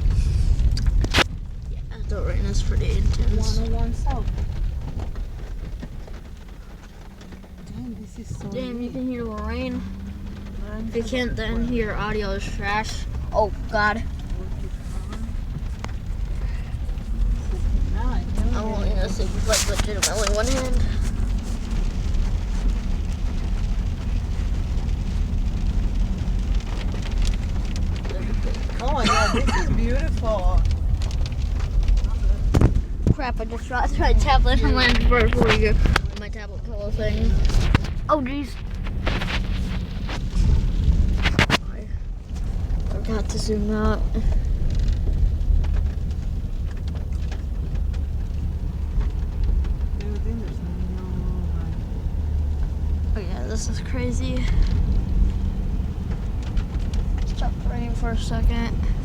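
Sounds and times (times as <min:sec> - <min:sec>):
car driving low rumble: 0:00.0 - 0:59.0
rain hitting car body: 0:00.0 - 0:59.0.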